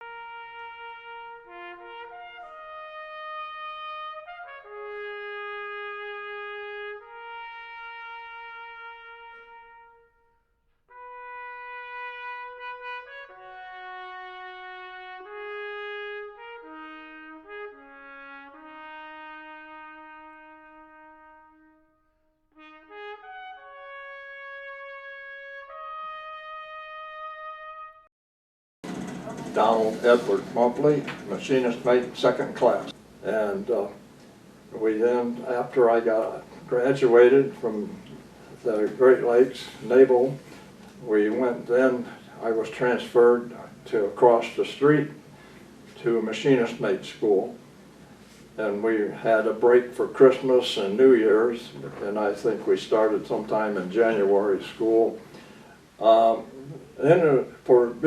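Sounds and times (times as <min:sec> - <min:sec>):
solo trumpet melody: 0:00.0 - 0:28.1.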